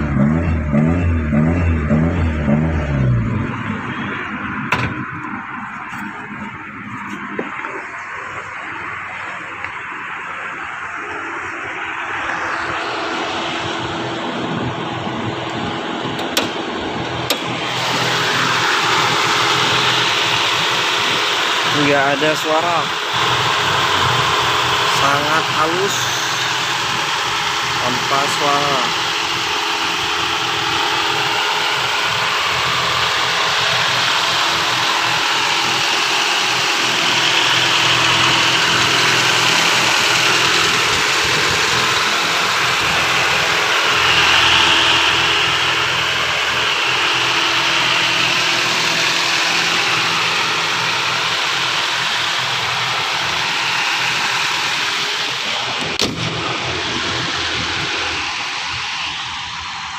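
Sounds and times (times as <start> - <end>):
car engine idling: 0.0 - 59.9.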